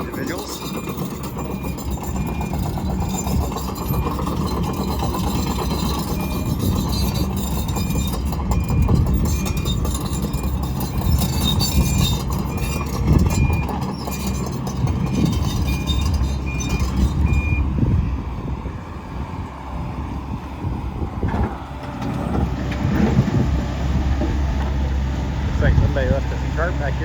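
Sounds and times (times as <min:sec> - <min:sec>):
metal clanking and knocking: 0:00.0 - 0:17.6
excavator diesel engine running: 0:00.0 - 0:27.0.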